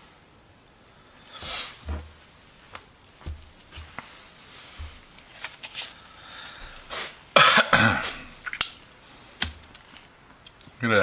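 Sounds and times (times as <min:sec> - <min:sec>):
lighter metal clicks: 0:08.4 - 0:08.8.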